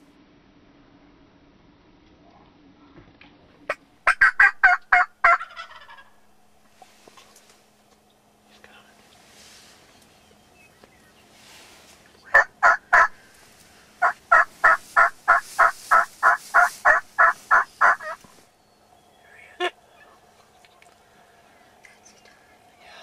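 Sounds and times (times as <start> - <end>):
turkey yelping: 3.7 - 6.2, 12.3 - 13.2, 14.0 - 18.3.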